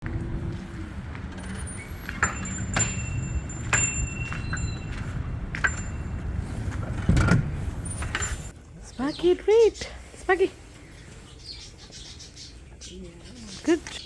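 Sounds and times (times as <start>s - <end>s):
steady low rumble: 0.0s - 8.5s.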